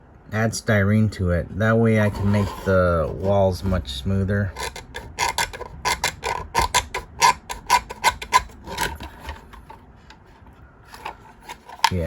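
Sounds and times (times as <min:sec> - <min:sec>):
hard plastic clicking: 0:04.5 - 0:12.0.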